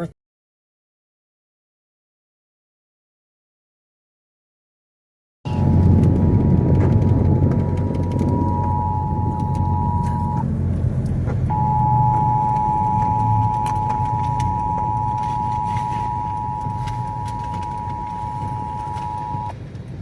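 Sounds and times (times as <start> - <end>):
low rumble: 5.5 - 20.0
two-tone alert signal: 8.0 - 10.4, 11.5 - 19.5.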